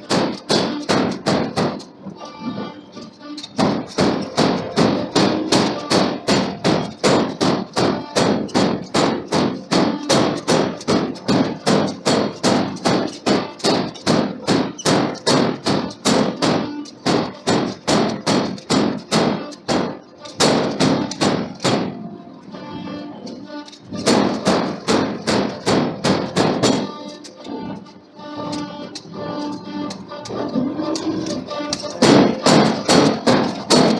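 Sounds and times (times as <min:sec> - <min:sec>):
hammer striking hot steel: 0:00.0 - 0:01.9, 0:03.4 - 0:22.0, 0:23.9 - 0:27.2, 0:31.0 - 0:33.9.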